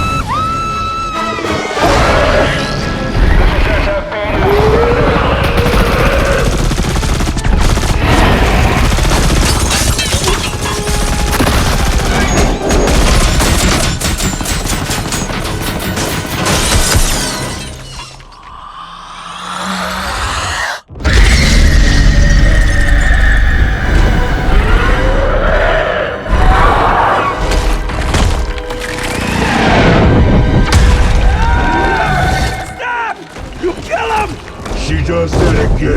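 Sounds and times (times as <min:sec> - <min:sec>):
action film music score: 0:00.0 - 0:35.9
rapid gunfire: 0:05.4 - 0:16.8
crashes and shattering: 0:07.5 - 0:18.5.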